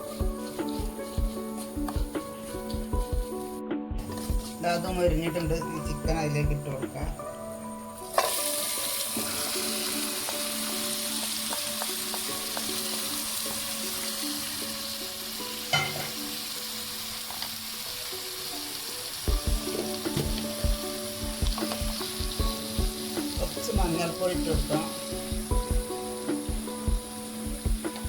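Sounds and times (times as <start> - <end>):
chicken sizzling in a pan: 0.0 - 6.2, 7.6 - 28.0.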